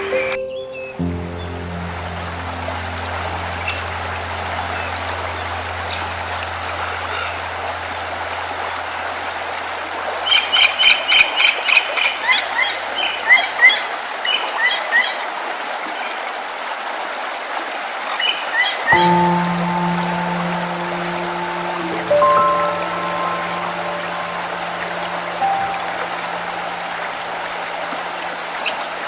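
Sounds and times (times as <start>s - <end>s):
bird chirping: 0.0s - 6.1s
stream flowing: 0.0s - 29.0s
low hum: 1.0s - 10.4s, 19.0s - 29.0s.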